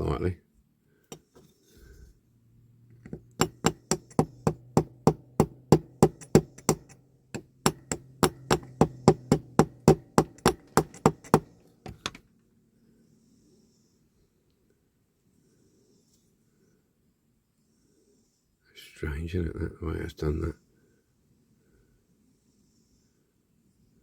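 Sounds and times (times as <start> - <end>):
small hammer tapping metal: 1.1 - 1.5, 3.0 - 12.2.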